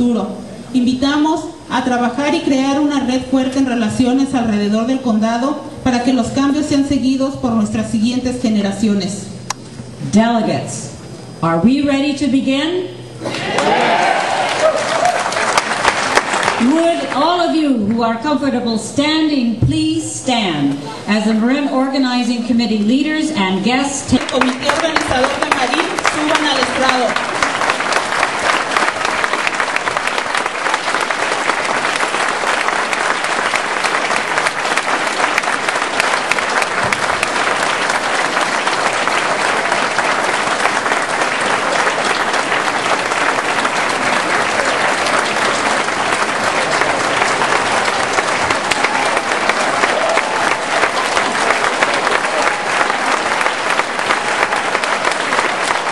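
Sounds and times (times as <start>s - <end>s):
large crowd applauding: 13.3s - 17.3s, 24.1s - 55.9s.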